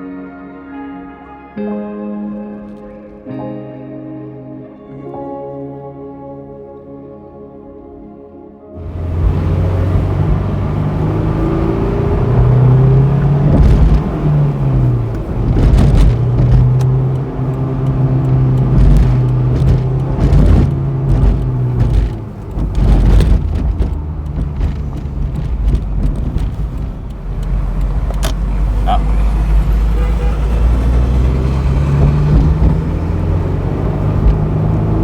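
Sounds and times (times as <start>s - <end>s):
car engine from inside cabin: 8.8s - 35.0s.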